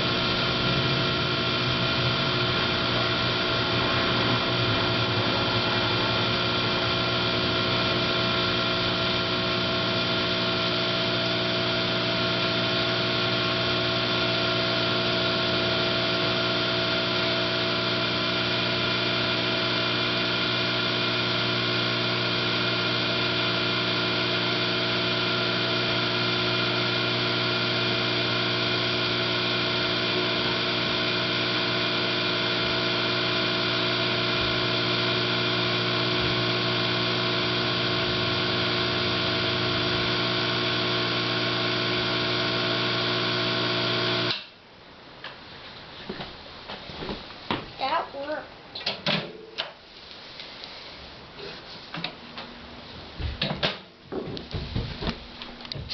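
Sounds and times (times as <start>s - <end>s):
microwave oven humming: 0.0s - 44.4s.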